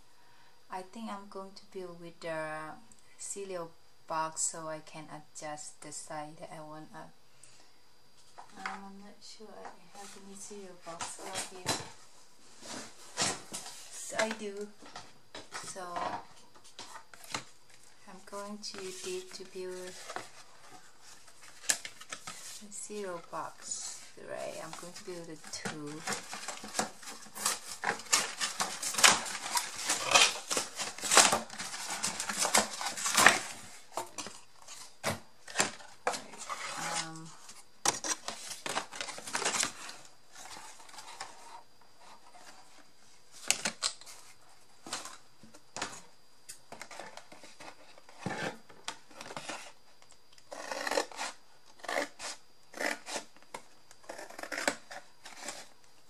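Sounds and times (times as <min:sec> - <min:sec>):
cardboard rustling: 0:09.7 - 0:49.8.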